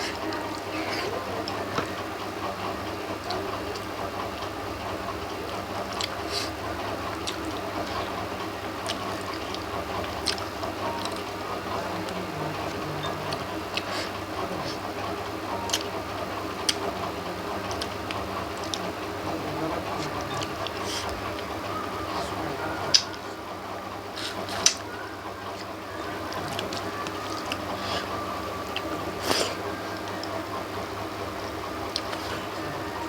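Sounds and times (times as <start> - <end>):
background hum: 0.0 - 33.0
chewing clicks and smacks: 5.5 - 14.9, 16.6 - 19.0, 31.9 - 32.4.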